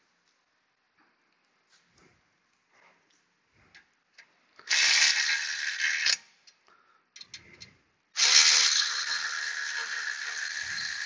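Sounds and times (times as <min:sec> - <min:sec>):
ratchet wrench clicking: 0:04.6 - 0:06.6, 0:08.2 - 0:11.0.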